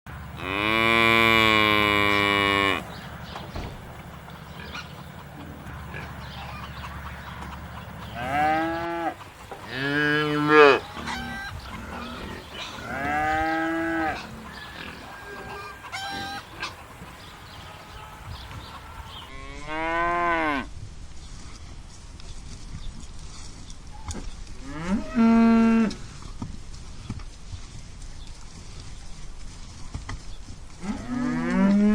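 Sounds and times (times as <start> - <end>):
cows mooing: 0.3 - 3.1, 8.1 - 20.7, 24.6 - 26.0, 30.8 - 31.9.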